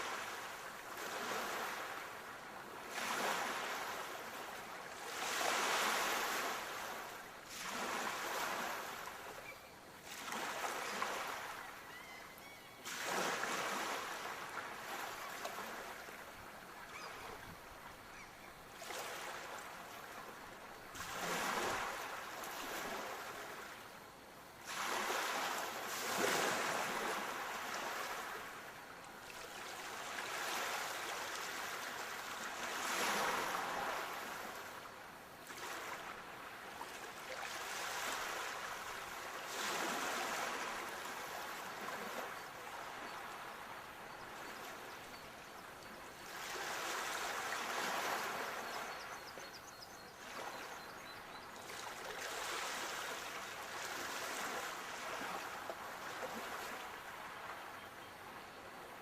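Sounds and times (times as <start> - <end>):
sea waves washing ashore: 0.0 - 9.3, 24.6 - 44.9, 46.3 - 49.0, 51.7 - 57.7.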